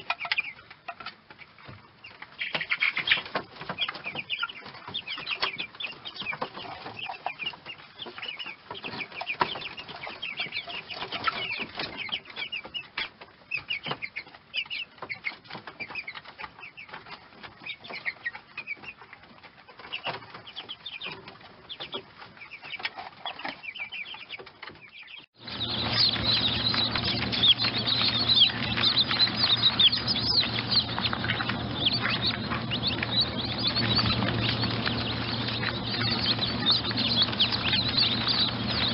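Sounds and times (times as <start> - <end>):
chicks peeping: 0.0 - 38.9
steady low hum: 25.4 - 38.9.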